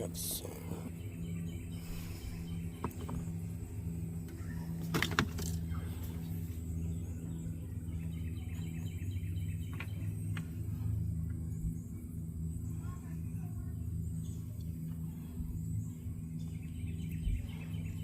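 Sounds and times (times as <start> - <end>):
low engine-like hum: 0.0 - 18.0.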